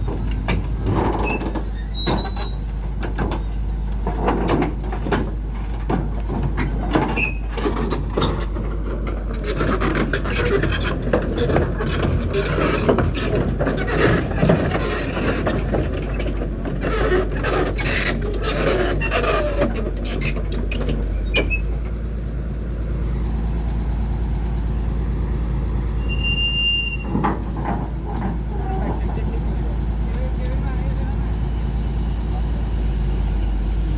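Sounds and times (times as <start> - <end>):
steel tracks clanking and scraping: 0.0 - 22.4, 25.8 - 32.0
excavator diesel engine: 0.0 - 33.9
high squeal: 26.0 - 27.2.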